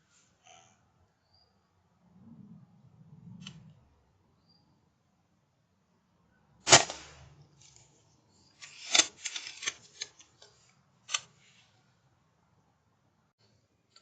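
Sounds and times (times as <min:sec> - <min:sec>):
air rifle shot: 0:06.7 - 0:07.3.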